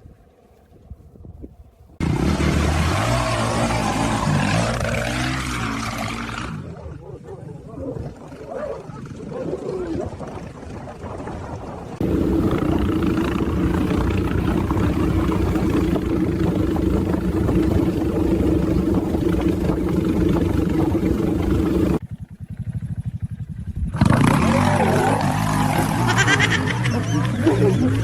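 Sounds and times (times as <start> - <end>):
motorcycle engine running: 11.0 - 28.0.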